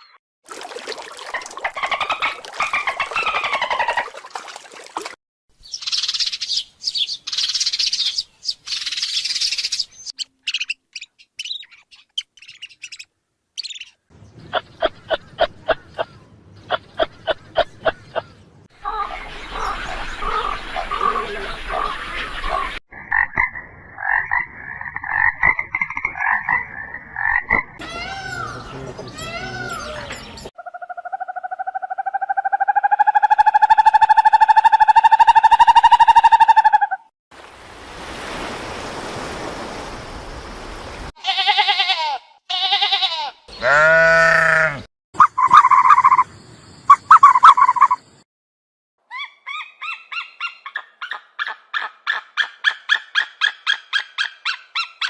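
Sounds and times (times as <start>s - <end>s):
fast pulsed animal calls: 30.6s - 37.1s, 45.2s - 46.2s, 46.9s - 48.0s
long pulsing animal call: 41.2s - 44.9s.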